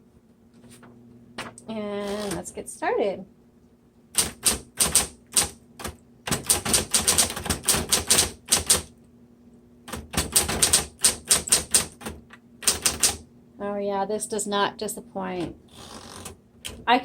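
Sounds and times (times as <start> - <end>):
typewriter motor humming: 2.0 - 2.5, 4.2 - 8.9, 9.9 - 13.2, 15.7 - 16.8.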